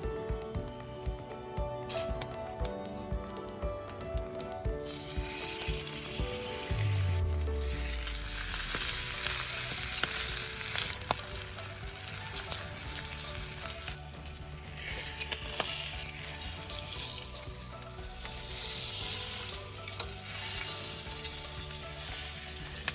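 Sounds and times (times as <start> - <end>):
food sizzling over a campfire: 4.8 - 22.9.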